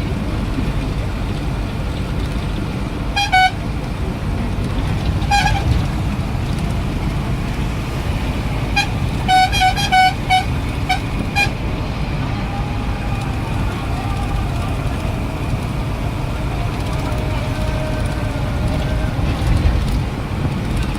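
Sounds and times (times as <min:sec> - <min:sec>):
steady low rumble: 0:00.0 - 0:20.9
vehicle horn honking: 0:03.1 - 0:03.7, 0:05.2 - 0:06.0, 0:08.5 - 0:11.8.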